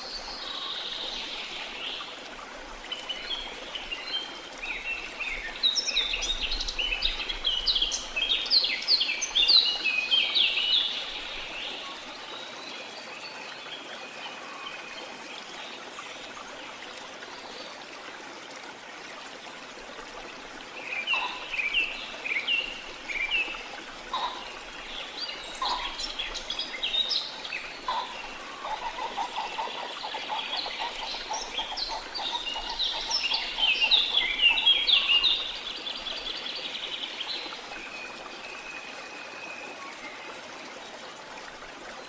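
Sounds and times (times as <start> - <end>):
water rushing: 0.0 - 42.0
birds calling: 21.0 - 35.6.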